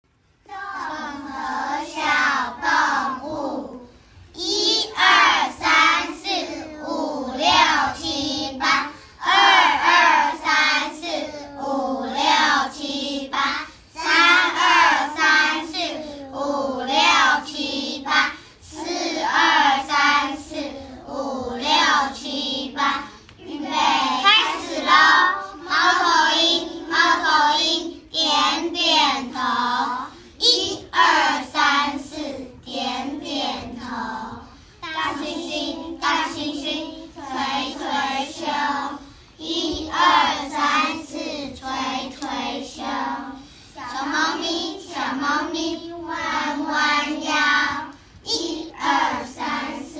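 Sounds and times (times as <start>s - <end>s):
children singing: 0.4s - 49.9s.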